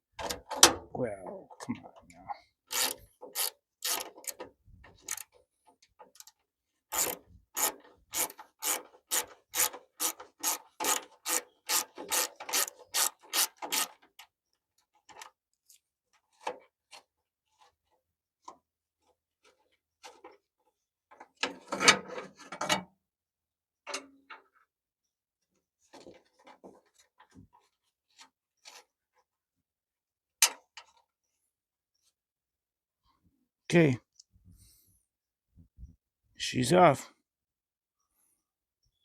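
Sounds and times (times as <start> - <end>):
hand tool rasping strokes: 2.7 - 4.4, 6.9 - 14.0.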